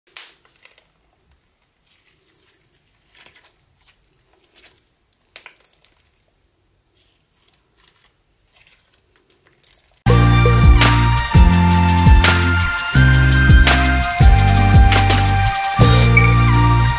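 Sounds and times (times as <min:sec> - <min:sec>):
sticky slime crackling: 0:00.1 - 0:10.1
background music with a beat: 0:10.1 - 0:16.9.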